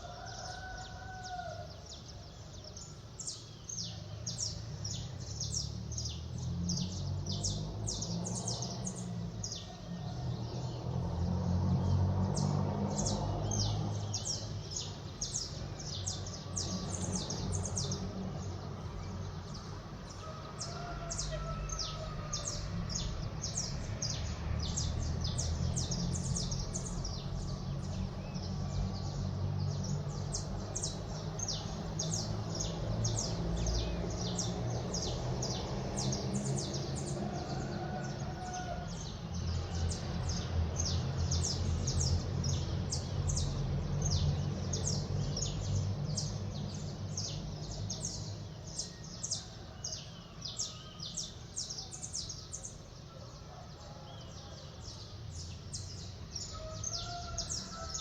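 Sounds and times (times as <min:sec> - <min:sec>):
low city rumble: 0:00.0 - 0:58.0
small birds chirping: 0:11.8 - 0:58.0.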